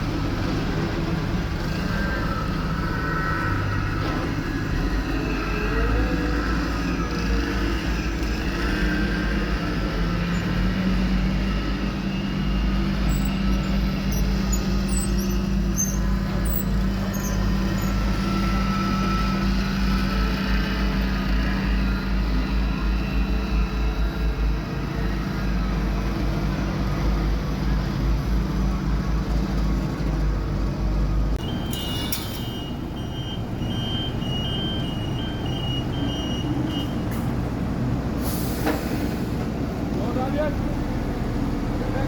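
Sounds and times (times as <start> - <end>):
heavy machinery engines rumbling: 0.0 - 42.0
reversing alarm beeping: 10.2 - 19.5, 31.4 - 37.1.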